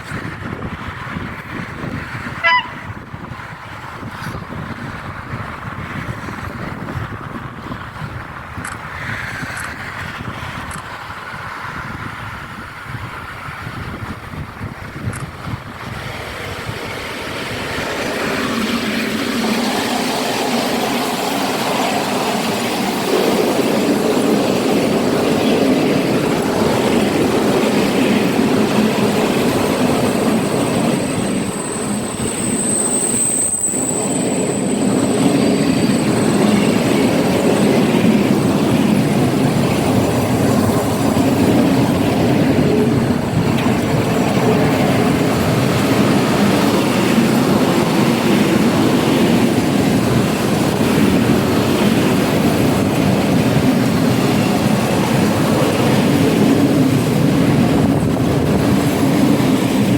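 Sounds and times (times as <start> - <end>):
train rumble: 0.0 - 59.9.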